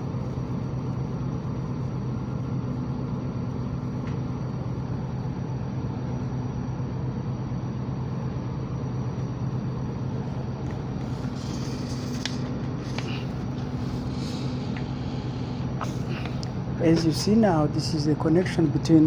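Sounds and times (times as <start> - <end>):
air conditioner unit humming: 0.0 - 19.0.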